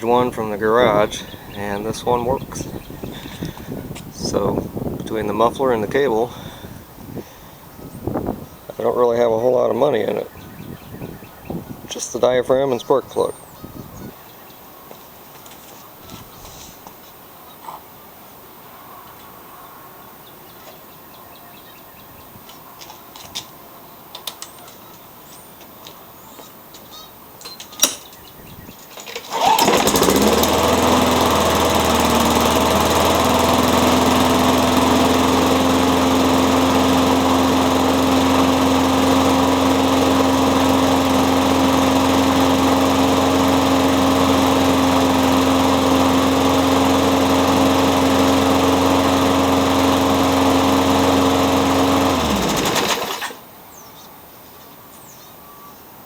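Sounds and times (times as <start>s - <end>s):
lawn mower engine running: 0.0s - 11.2s, 29.0s - 53.5s.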